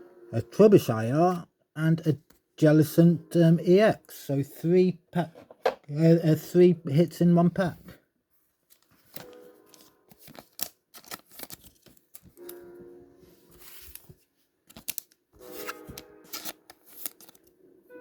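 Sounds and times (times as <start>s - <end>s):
soft background music: 0.0s - 5.1s, 5.9s - 7.8s, 8.7s - 18.0s
cards and packaging rustling: 8.4s - 17.6s
foil wrapper crinkling and tearing: 8.7s - 12.6s, 13.6s - 17.5s.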